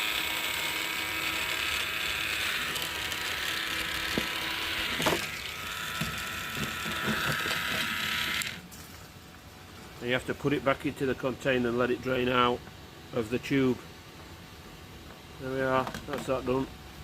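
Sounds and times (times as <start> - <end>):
fuel pump buzzing: 0.0 - 8.6.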